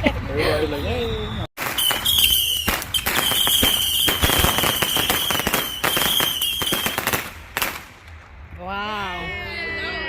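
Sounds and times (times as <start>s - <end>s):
high-pitched firework whistle: 1.2s - 7.1s
fireworks crackling: 1.6s - 8.3s.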